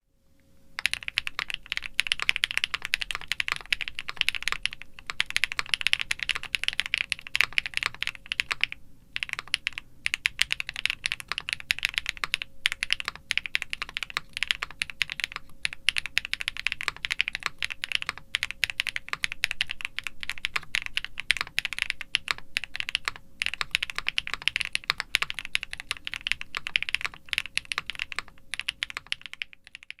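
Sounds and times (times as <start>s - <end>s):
fast mechanical keyboard typing: 0.8s - 30.0s.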